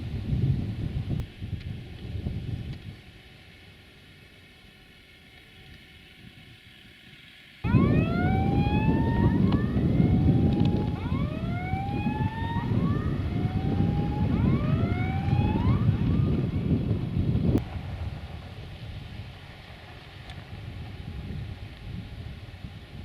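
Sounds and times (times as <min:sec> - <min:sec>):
rising whines: 0:07.6 - 0:17.7.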